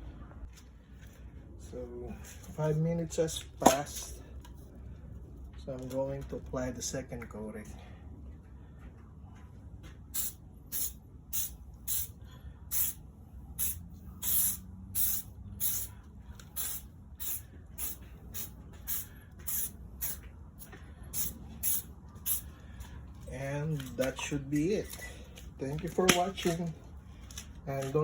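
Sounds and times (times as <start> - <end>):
aerosol can spraying: 10.2 - 13.0, 13.6 - 22.5.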